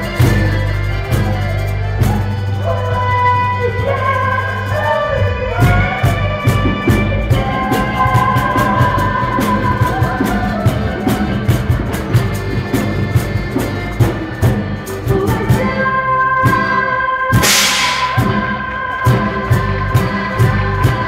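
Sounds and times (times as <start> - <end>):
music with steady drum beat: 5.6 - 15.8, 17.4 - 21.0
loud burst of noise: 17.4 - 18.5.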